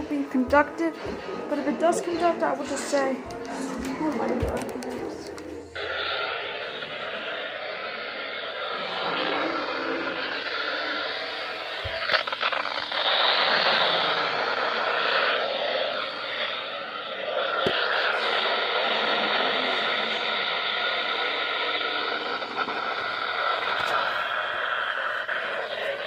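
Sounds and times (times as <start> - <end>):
faint broadcast voice: 0.0 - 5.7
radio static hiss: 4.5 - 26.0.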